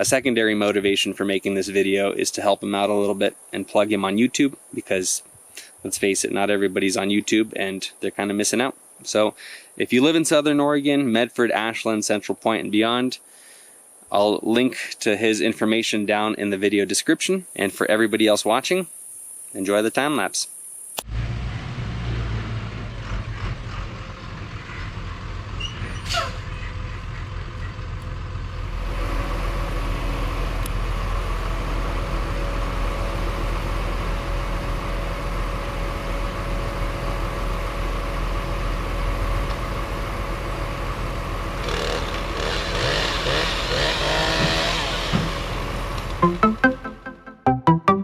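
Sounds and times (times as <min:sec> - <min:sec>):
truck engine running: 0:26.6 - 0:46.2.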